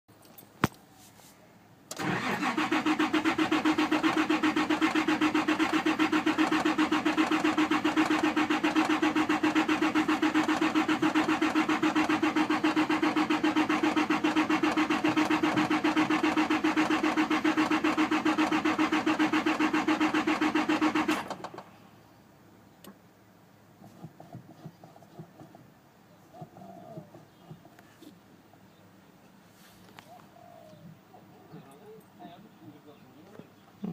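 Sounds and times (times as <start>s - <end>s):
car engine cranking on starter: 1.9s - 21.8s.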